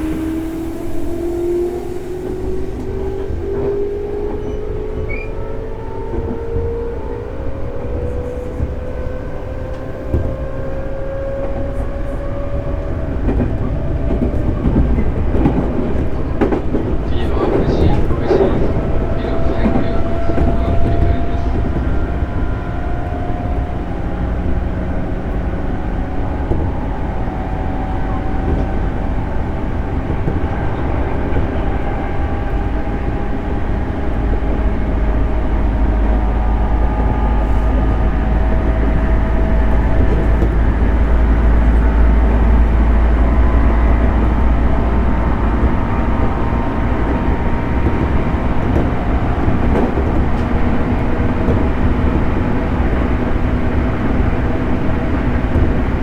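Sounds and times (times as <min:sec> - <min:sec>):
faint train whine: 0:00.0 - 0:56.0
train wheels rumbling: 0:00.0 - 0:56.0.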